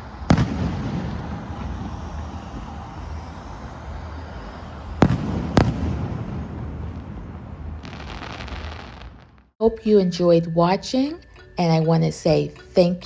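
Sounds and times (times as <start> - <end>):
fireworks rumble: 0.0 - 9.6
loud firework bangs: 0.1 - 9.6.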